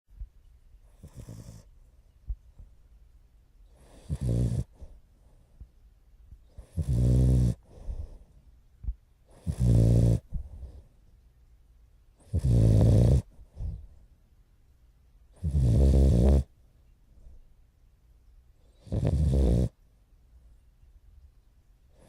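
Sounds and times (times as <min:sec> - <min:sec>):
puppy snoring: 0:00.8 - 0:01.7, 0:03.7 - 0:05.0, 0:06.5 - 0:08.2, 0:09.2 - 0:10.7, 0:12.2 - 0:13.9, 0:15.3 - 0:16.5, 0:18.6 - 0:19.8
soft breathing: 0:03.6 - 0:06.8, 0:07.5 - 0:09.5, 0:10.2 - 0:11.2, 0:13.2 - 0:14.2.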